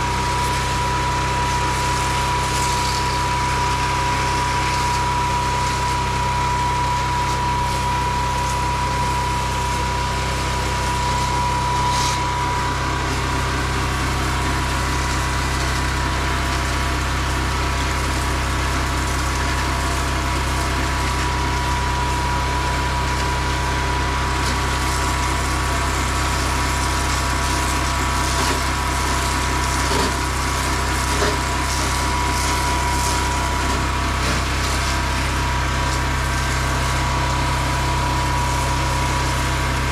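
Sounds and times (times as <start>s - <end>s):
pressure washer pump running: 0.0s - 39.9s
water spraying: 0.0s - 39.9s.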